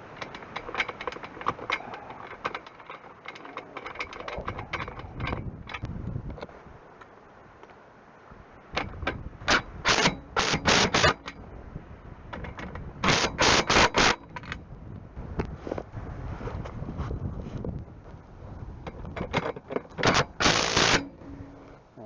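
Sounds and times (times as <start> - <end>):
socket tool metallic rattling: 0.0 - 5.9, 18.9 - 21.6.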